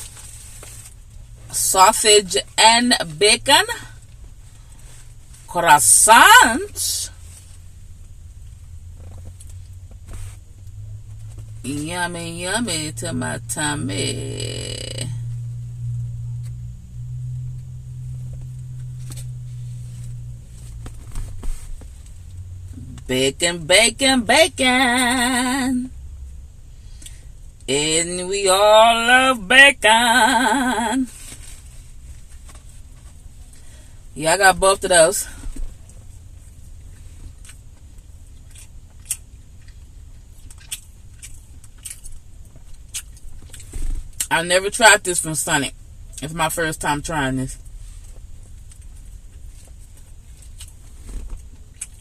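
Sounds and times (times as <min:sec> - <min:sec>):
car idling hum inside cabin: 0:00.0 - 0:52.0
faint clicks and rustles: 0:07.1 - 0:11.7, 0:35.4 - 0:44.2
chewing and biting food: 0:37.4 - 0:44.2.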